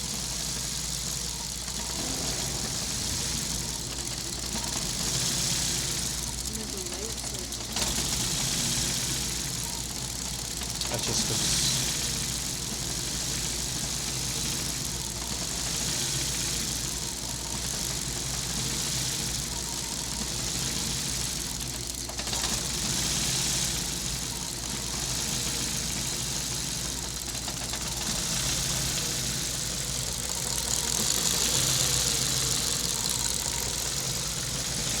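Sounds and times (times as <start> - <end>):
car engine idling roughly: 0.0 - 35.0
hiss: 0.0 - 35.0.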